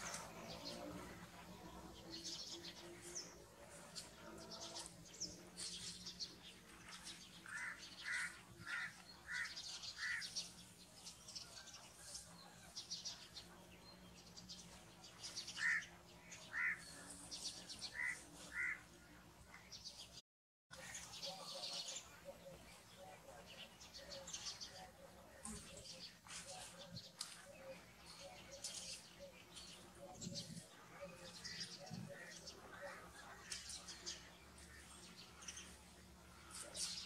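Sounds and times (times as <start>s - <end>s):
birds chirping: 0.0s - 18.9s.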